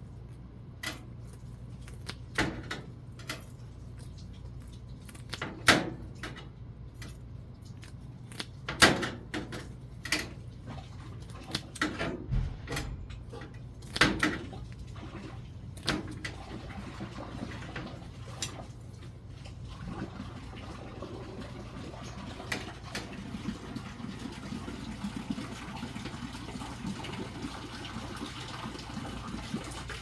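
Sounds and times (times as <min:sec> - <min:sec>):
steady low hum: 0:09.6 - 0:16.6.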